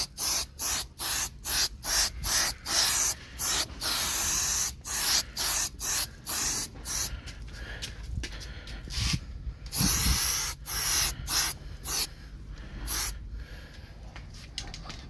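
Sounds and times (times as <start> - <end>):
spray paint can hissing: 0.0 - 7.2, 8.9 - 12.1, 12.8 - 13.2.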